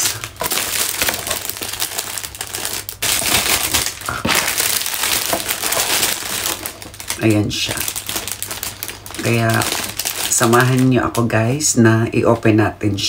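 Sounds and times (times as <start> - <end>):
packaging crinkling: 0.0 - 12.4.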